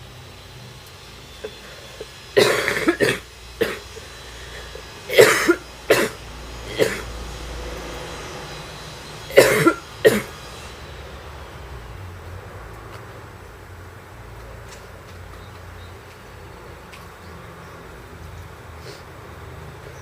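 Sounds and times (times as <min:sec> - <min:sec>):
woman coughing: 0:02.4 - 0:03.9, 0:05.1 - 0:07.1, 0:09.3 - 0:10.3.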